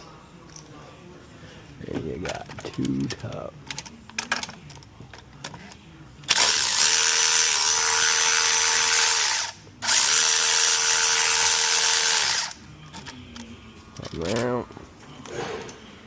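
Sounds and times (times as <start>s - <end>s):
tool handling clicks: 2.2s - 6.6s, 12.9s - 14.6s
power tool motor running: 6.3s - 12.6s.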